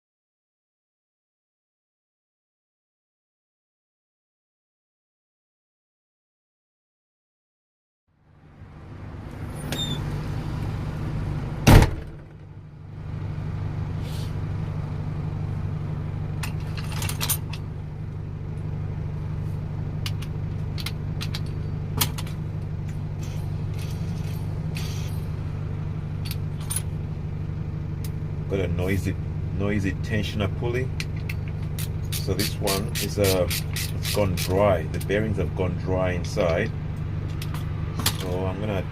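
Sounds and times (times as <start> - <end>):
car engine idling: 8.2 - 38.9
belt over noisy pulley: 31.1 - 35.4.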